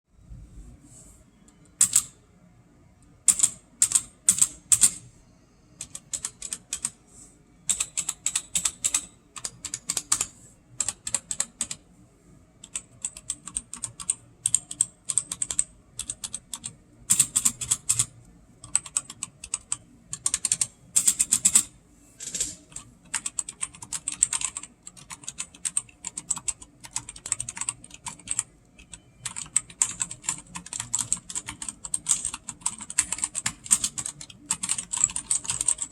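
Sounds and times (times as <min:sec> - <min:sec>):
mechanical keyboard typing: 0:01.8 - 0:02.2, 0:03.2 - 0:05.0, 0:05.8 - 0:07.0, 0:07.7 - 0:11.8, 0:12.6 - 0:35.9.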